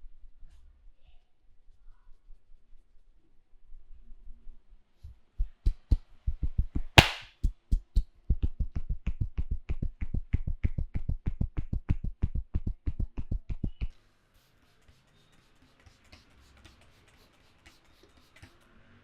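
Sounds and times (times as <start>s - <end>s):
hands thumping on head: 7.0s - 7.3s
loud sharp slap: 7.0s - 7.3s.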